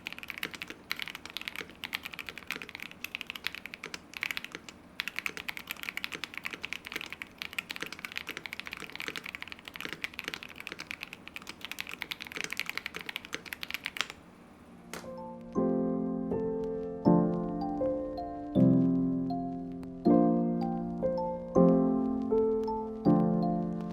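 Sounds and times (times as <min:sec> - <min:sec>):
mechanical keyboard typing: 0:00.0 - 0:14.2.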